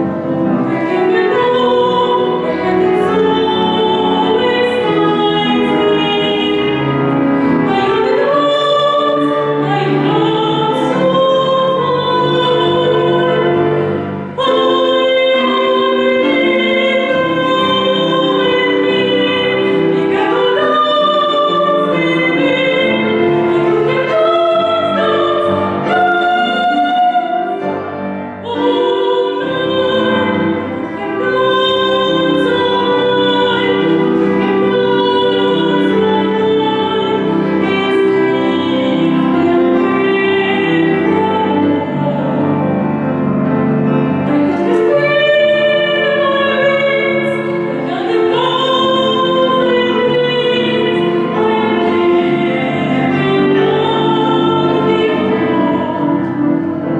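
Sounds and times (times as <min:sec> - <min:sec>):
instrumental accompaniment: 0:00.0 - 0:56.9
woman singing with vibrato: 0:00.7 - 0:42.9, 0:44.2 - 0:56.9.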